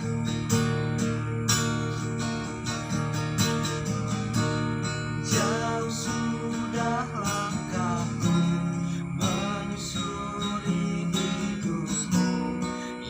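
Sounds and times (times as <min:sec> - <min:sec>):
acoustic guitar strumming chords: 0:00.0 - 0:13.0
person singing: 0:05.2 - 0:13.0.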